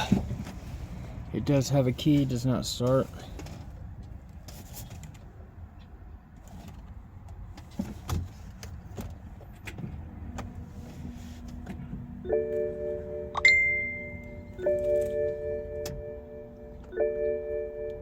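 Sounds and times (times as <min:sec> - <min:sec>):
ignition clicks: 0:11.5 - 0:18.0
dashboard warning chime: 0:12.1 - 0:18.0
sharp high ding: 0:13.3 - 0:14.5.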